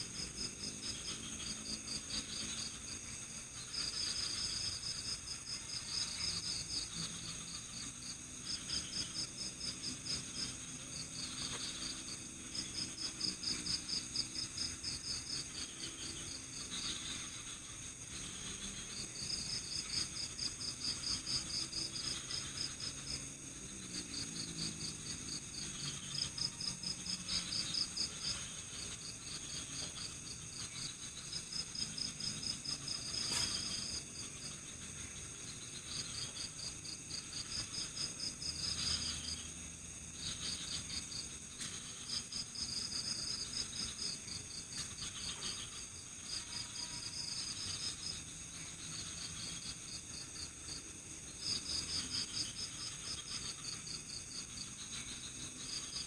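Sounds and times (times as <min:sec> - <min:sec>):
crickets chirping: 0:00.0 - 0:56.0
shrill insect drone: 0:00.2 - 0:56.0.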